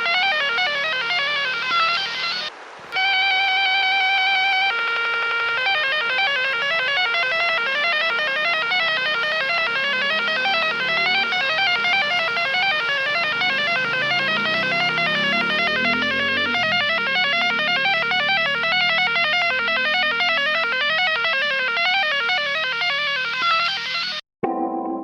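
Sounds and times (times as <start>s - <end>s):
fast plucked melody: 0.0s - 24.2s
held alarm tone: 0.0s - 24.2s.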